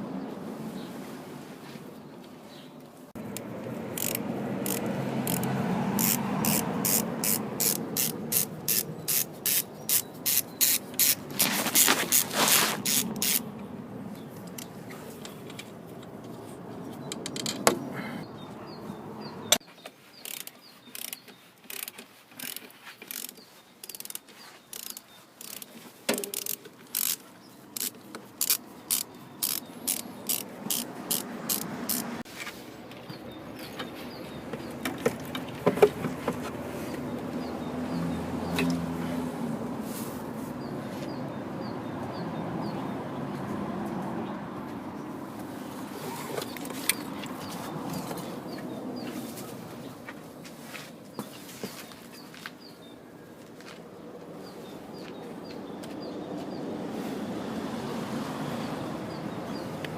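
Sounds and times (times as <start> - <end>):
ratchet wrench clicking: 3.4 - 13.4, 20.2 - 27.2, 27.8 - 32.2.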